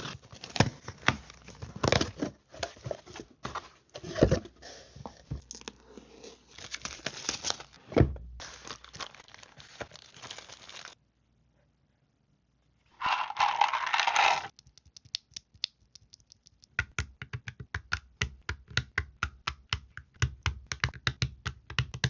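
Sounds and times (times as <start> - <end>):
wrapping crinkling and tearing: 5.5 - 7.8, 8.4 - 11.0.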